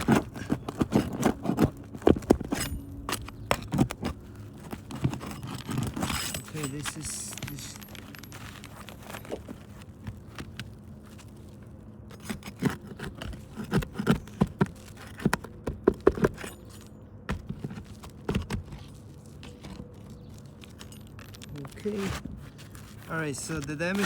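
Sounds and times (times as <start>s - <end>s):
hand tools prying nails: 0.0s - 9.5s
sharp knocks and scrapes: 0.0s - 10.7s.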